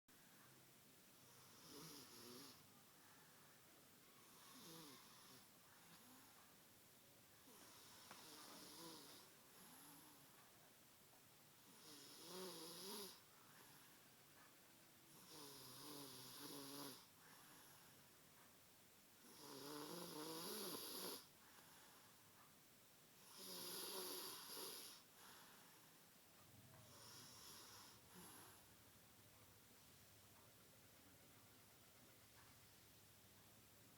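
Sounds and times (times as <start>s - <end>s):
person snoring: 1.3s - 2.6s, 4.3s - 5.5s, 7.5s - 10.2s, 11.7s - 13.2s, 15.1s - 17.1s, 19.2s - 21.3s, 23.2s - 25.1s, 26.9s - 28.6s.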